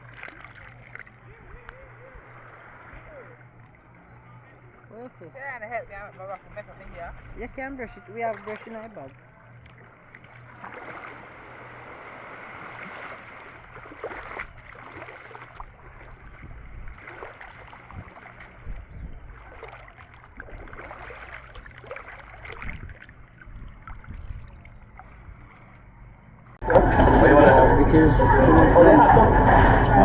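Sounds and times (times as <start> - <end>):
boat engines humming: 0.0 - 30.0
water splashing along hull: 0.0 - 30.0.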